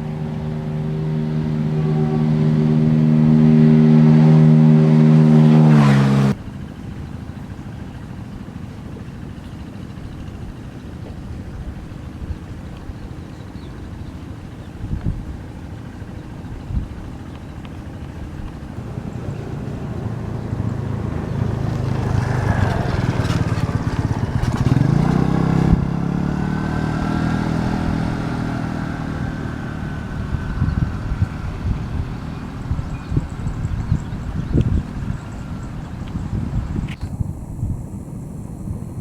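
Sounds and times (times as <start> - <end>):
vehicle driving past: 0.0 - 6.4, 17.0 - 36.4.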